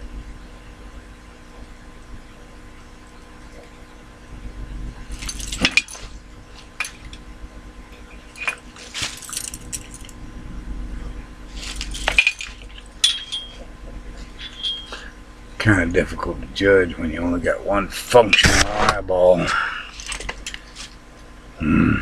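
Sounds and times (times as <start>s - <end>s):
faint steady hum: 0.0s - 22.0s
sharp clinks of hard objects: 5.1s - 6.2s, 11.7s - 13.7s, 14.4s - 15.1s
small tools scraping: 8.0s - 10.1s, 11.5s - 15.1s, 19.9s - 21.0s.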